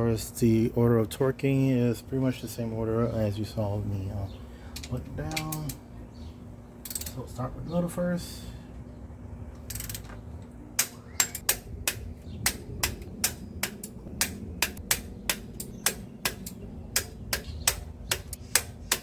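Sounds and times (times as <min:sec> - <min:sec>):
ratchet wrench clicking: 0:06.8 - 0:07.2, 0:09.6 - 0:10.1, 0:10.8 - 0:19.0.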